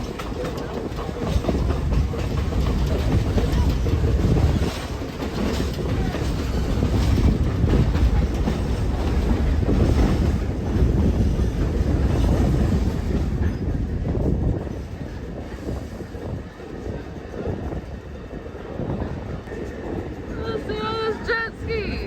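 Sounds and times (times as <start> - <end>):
wheels clacking over track: 0.0 - 15.8
train wheels rumbling on rails: 0.0 - 22.0.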